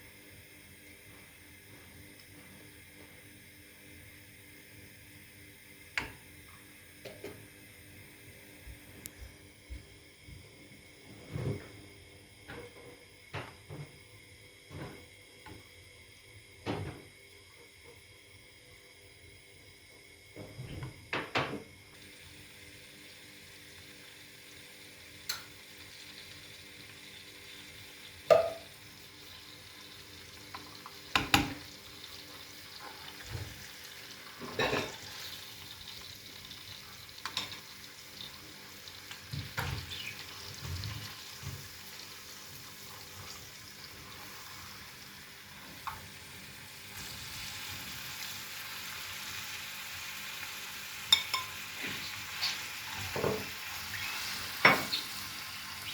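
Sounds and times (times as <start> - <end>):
food sizzling in a pan: 21.9 - 55.9.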